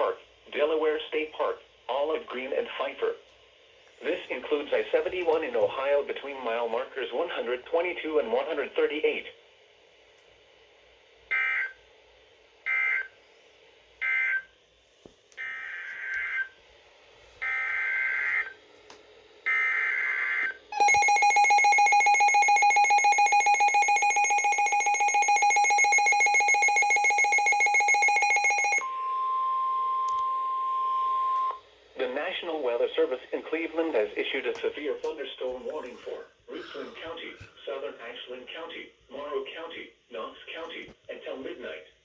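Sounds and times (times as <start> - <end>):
pulsing attention signal: 20.8 - 31.6.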